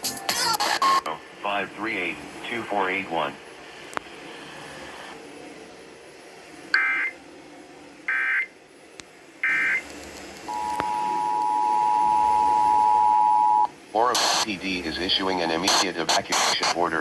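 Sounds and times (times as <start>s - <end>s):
digital data tone bursts: 0.0s - 1.1s, 6.7s - 7.2s, 8.1s - 8.6s, 9.4s - 9.9s, 10.5s - 16.9s
two-tone attention signal: 0.2s - 1.1s, 6.8s - 7.2s, 8.1s - 8.5s, 9.4s - 9.8s, 10.5s - 13.7s.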